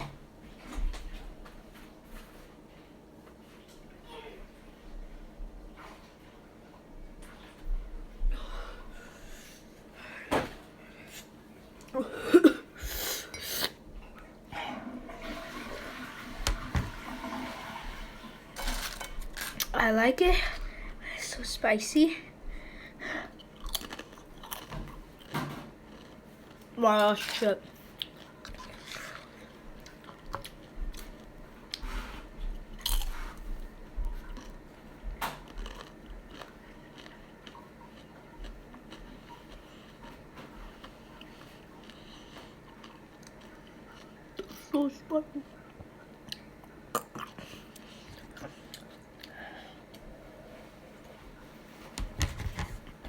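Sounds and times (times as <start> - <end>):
person crunching chips: 23.6 - 24.7.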